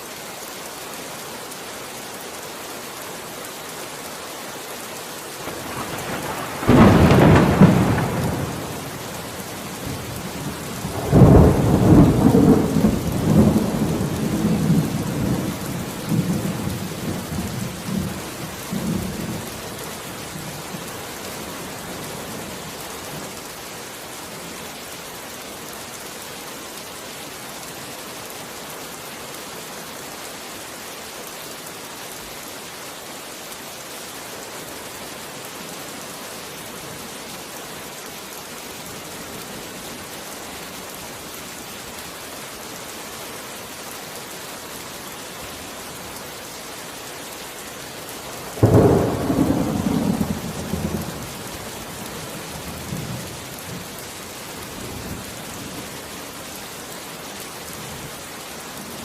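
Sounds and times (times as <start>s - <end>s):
heavy rain: 0.0s - 59.0s
thunderclap rumbling: 5.5s - 15.4s, 48.6s - 51.2s.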